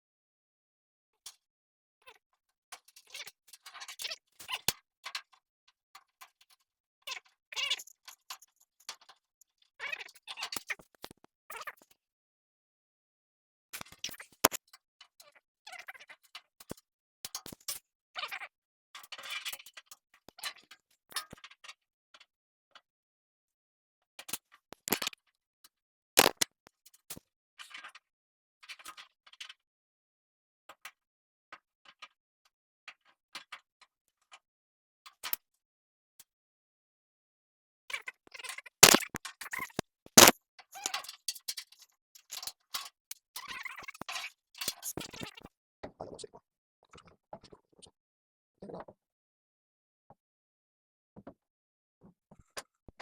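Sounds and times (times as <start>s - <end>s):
small hard objects rattling: 38.8s - 39.1s, 40.2s - 40.9s.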